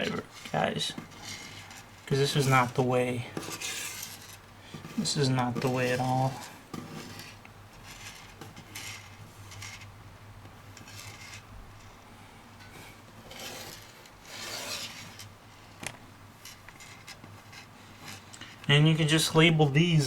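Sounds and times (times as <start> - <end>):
hands rubbing things on a desk: 0.0 - 9.9, 10.7 - 12.0, 12.8 - 15.8, 16.4 - 18.6.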